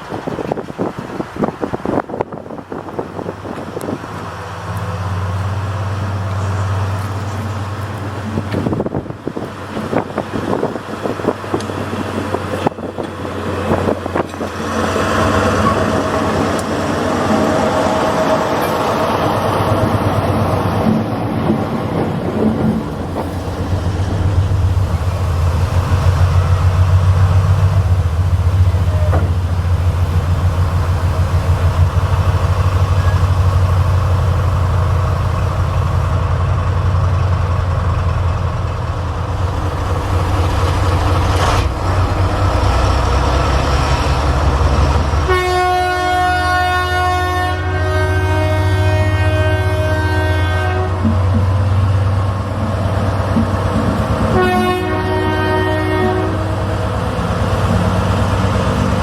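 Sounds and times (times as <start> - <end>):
diesel locomotive engine throbbing: 0.3 - 59.0
locomotive horn: 43.4 - 51.5, 54.2 - 56.9.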